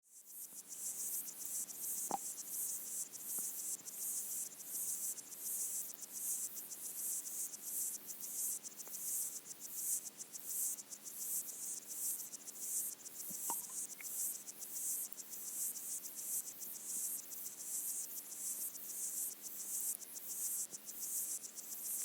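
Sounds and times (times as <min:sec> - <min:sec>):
high-pitched pulsing insect buzz underwater: 0:13.1 - 0:14.1.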